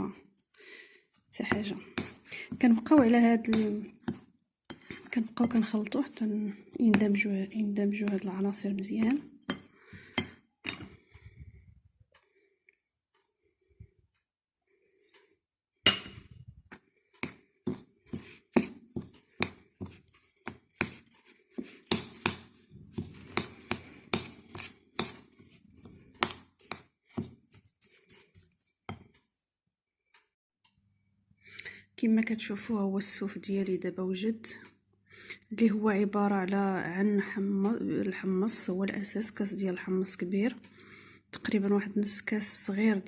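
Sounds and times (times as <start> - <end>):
utensil clinking against bowl: 15.9 - 16.3.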